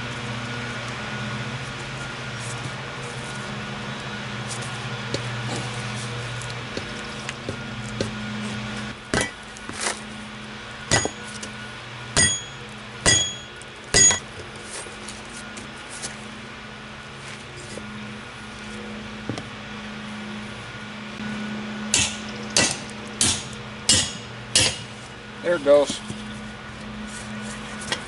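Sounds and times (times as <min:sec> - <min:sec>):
hammer blows on metal: 0:12.2 - 0:14.2.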